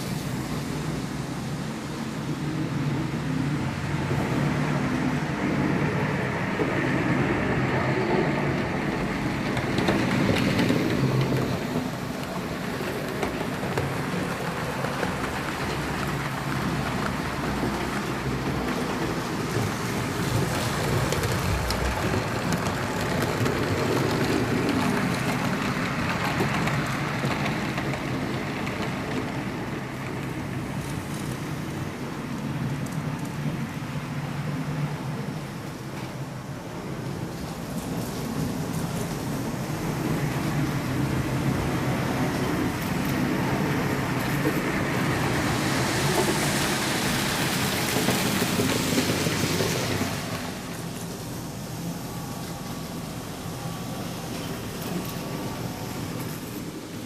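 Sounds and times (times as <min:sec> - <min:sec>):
wheels rolling over track: 0:01.9 - 0:57.0.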